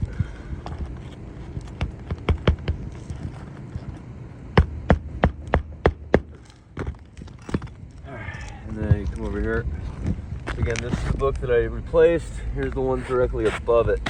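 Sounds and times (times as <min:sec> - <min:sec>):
hammer striking roofing nails: 0:01.7 - 0:02.8, 0:04.6 - 0:07.7.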